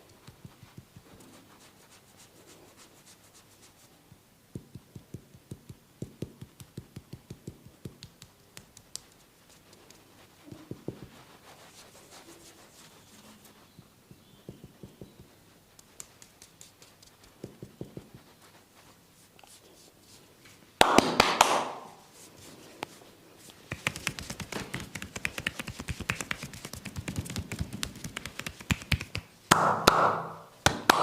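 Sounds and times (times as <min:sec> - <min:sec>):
percussive massage taps: 0:04.5 - 0:09.2, 0:14.4 - 0:18.2, 0:20.8 - 0:22.0, 0:23.7 - 0:31.0
rushing slap: 0:23.7 - 0:31.0.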